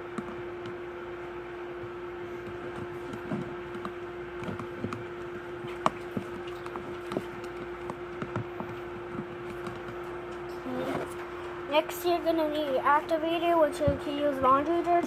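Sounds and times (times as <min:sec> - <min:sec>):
steady hum: 0:00.0 - 0:15.0
plastic utensil stirring glue: 0:02.4 - 0:10.2.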